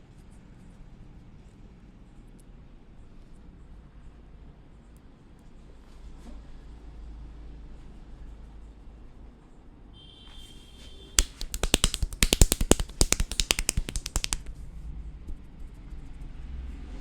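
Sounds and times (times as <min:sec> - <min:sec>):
scissors snipping rapidly: 0:11.2 - 0:14.5.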